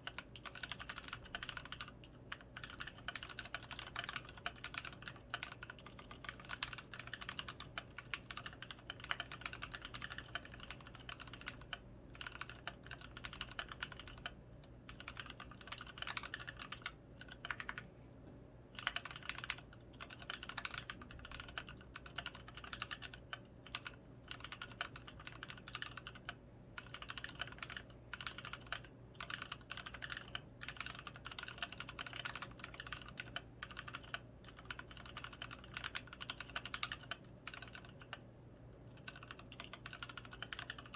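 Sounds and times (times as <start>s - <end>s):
mechanical keyboard typing: 0.0s - 17.8s, 18.7s - 38.2s, 38.9s - 40.9s.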